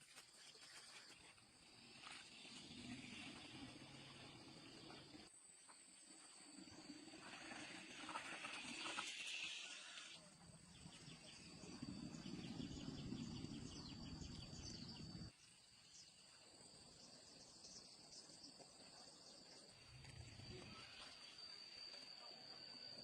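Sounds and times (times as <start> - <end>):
rapid insect chirping: 0.0 - 23.0
high-pitched insect drone: 6.2 - 15.3, 15.9 - 23.0.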